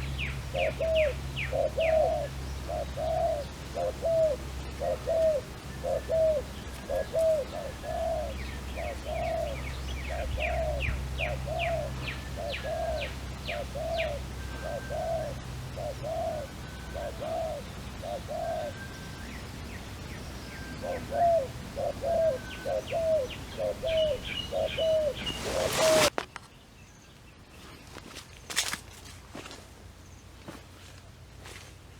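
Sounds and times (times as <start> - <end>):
dove cooing: 0.0 - 19.0, 20.6 - 26.1
bird high falling chirps: 22.2 - 26.1.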